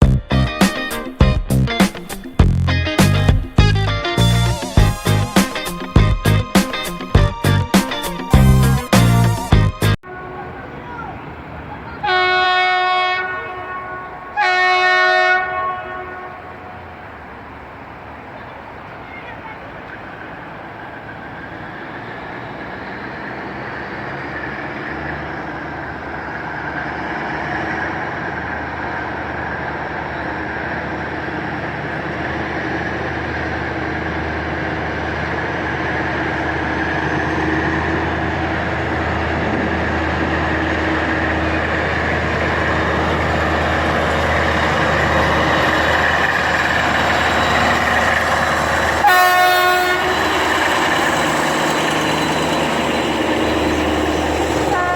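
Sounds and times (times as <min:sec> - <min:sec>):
diesel locomotive engines droning: 0:00.0 - 0:54.9.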